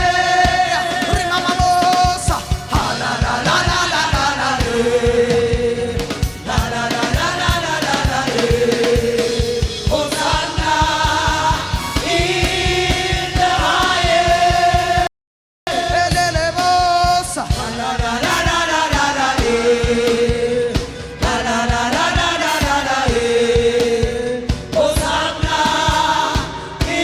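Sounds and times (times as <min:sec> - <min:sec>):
steady drum beat: 0:00.0 - 0:15.1, 0:15.7 - 0:27.0
voices singing long held notes: 0:02.7 - 0:15.1, 0:17.4 - 0:27.0.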